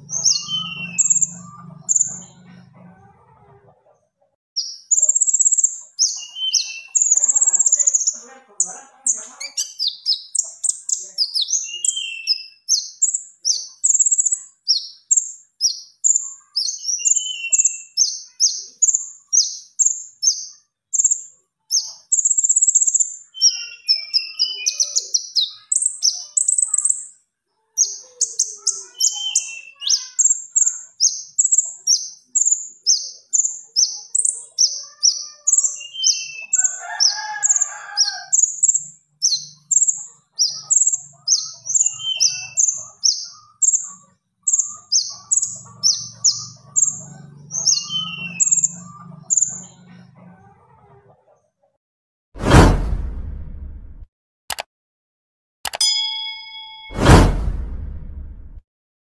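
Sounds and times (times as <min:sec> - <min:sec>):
lower bird warbling: 0:00.0 - 0:02.4
songbird high chirps: 0:00.0 - 0:02.4, 0:04.6 - 0:27.1, 0:27.8 - 0:49.8.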